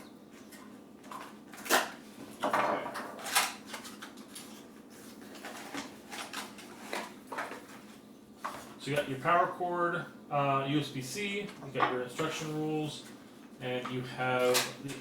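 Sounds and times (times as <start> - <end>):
packaging scraping rustles: 3.1 - 8.0.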